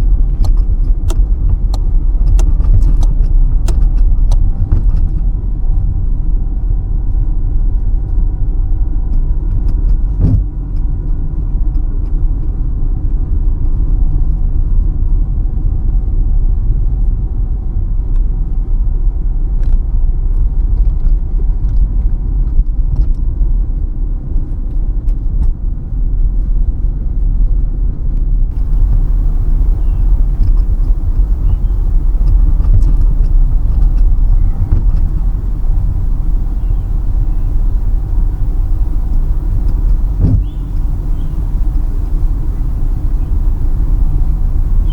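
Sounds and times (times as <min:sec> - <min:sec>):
car engine and tyres rumbling: 0:28.5 - 0:44.9
faint ticks: 0:28.5 - 0:44.9
road and wind hiss: 0:28.5 - 0:44.9.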